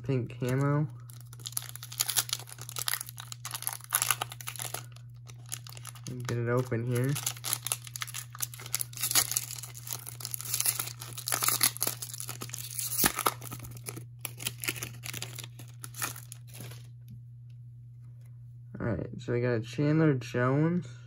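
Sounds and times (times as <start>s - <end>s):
steady low hum: 0.0s - 21.0s
wrapper tearing and crinkling: 0.3s - 16.9s.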